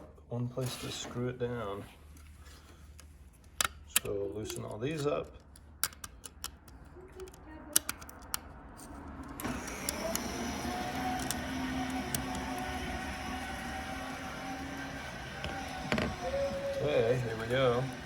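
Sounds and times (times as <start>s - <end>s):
tools clicking on screws: 3.6s - 8.5s
power drill motor running: 9.4s - 18.0s.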